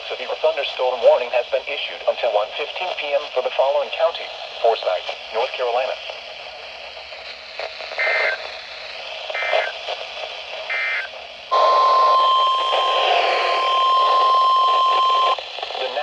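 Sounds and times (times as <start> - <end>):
radio hiss: 0.0 - 16.0
buzzy data bursts: 8.0 - 8.5.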